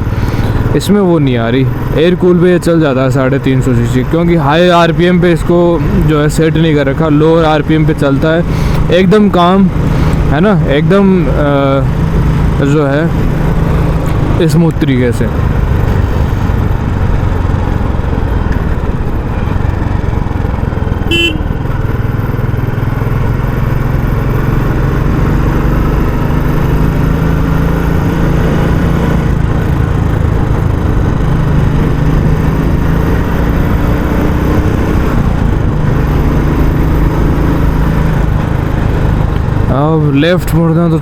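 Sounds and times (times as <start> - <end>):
motorcycle engine thumping: 15.4 - 23.6
horn beep: 21.0 - 21.6.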